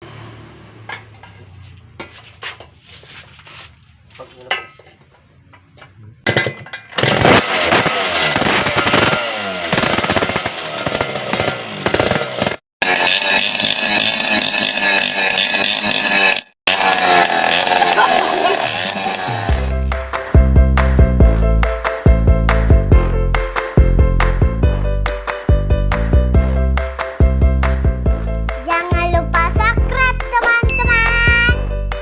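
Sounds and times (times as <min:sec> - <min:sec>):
two-stroke motorcycle engine revving: 0:06.9 - 0:19.9.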